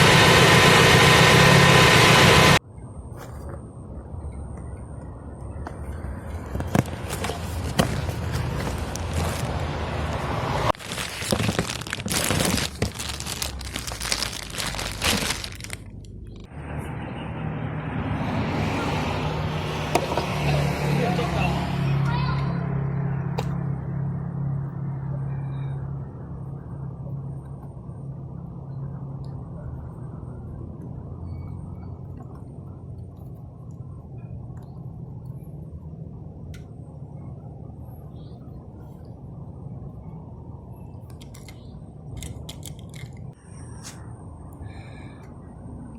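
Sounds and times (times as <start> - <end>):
crackling and rustling: 5.7 - 16.5.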